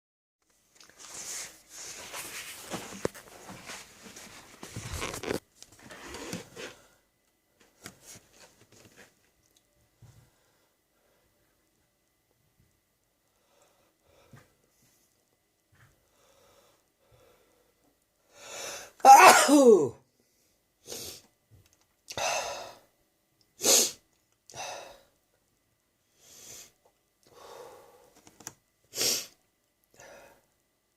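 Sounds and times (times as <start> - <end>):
close rustling and crackling: 0.5 - 6.7
person sniffing: 23.6 - 24.0, 28.9 - 29.4.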